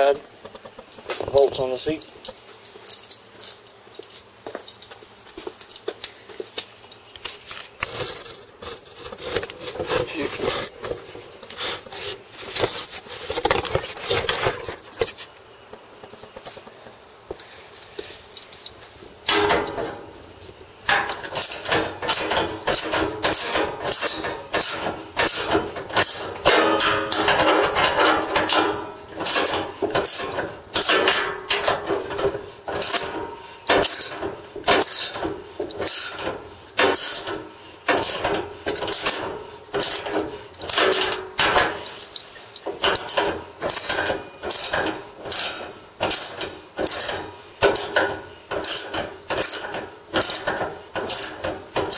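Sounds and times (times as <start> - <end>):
scraping and rubbing: 7.3 - 15.5
ratchet clicking: 20.9 - 51.9.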